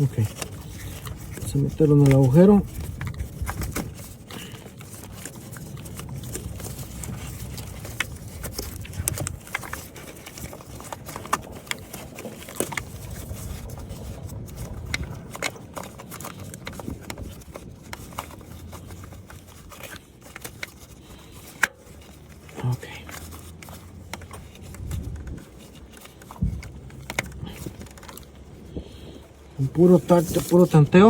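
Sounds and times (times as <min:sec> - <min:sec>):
low handling rumble: 0:21.8 - 0:31.0.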